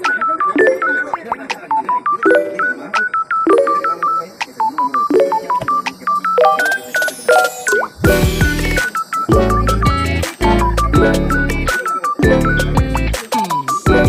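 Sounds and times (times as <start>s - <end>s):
electronic synth melody: 5.0s - 11.3s
heavy bass beat: 8.0s - 13.2s.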